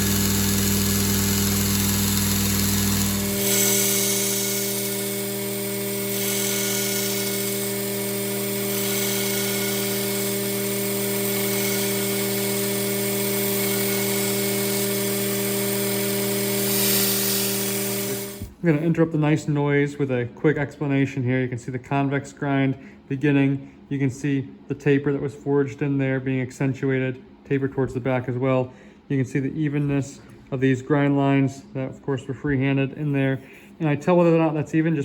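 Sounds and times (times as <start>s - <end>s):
steel hissing on grinding belt: 0.0s - 14.9s
belt grinder motor running: 0.0s - 18.6s.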